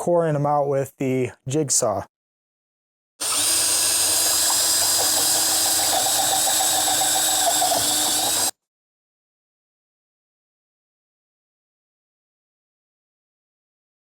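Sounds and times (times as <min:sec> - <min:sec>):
power drill boring into wood: 0:03.2 - 0:08.5.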